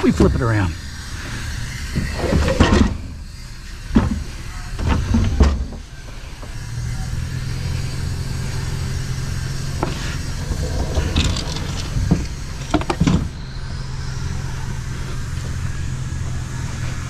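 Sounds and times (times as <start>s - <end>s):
vehicle engine humming: 5.9s - 17.0s
knocks and clunks of scrap: 9.8s - 13.4s.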